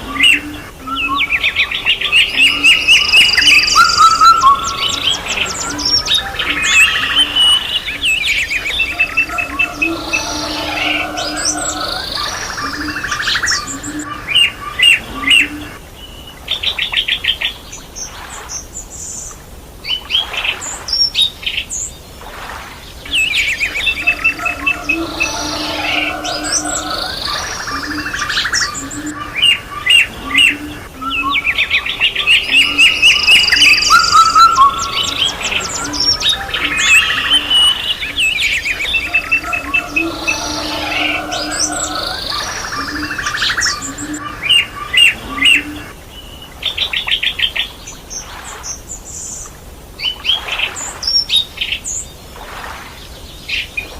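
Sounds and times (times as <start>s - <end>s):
songbirds chirping and singing: 0.0s - 17.9s, 23.0s - 48.0s.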